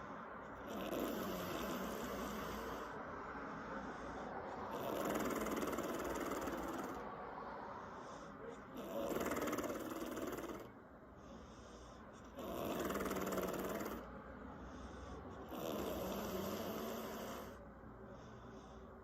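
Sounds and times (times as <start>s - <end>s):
woman snoring: 0.7s - 3.0s, 4.7s - 7.0s, 8.8s - 10.7s, 12.4s - 14.1s, 15.5s - 17.6s.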